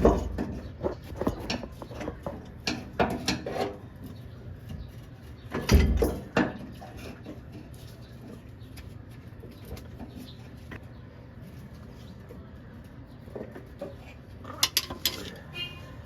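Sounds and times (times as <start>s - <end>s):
hand tools and metal fittings knocking: 13.4s - 15.4s.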